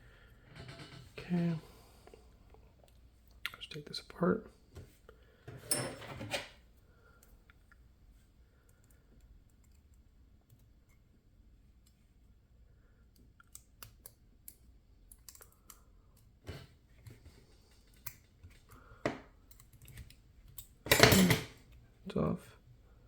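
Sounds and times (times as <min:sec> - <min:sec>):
metal lock parts clicking: 0:19.6 - 0:21.6.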